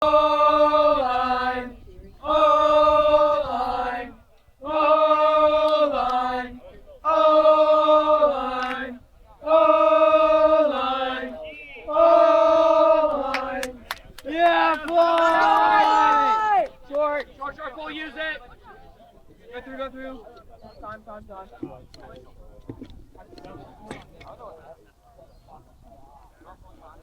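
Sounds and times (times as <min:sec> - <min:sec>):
voices chanting a phrase: 0:00.0 - 0:19.0.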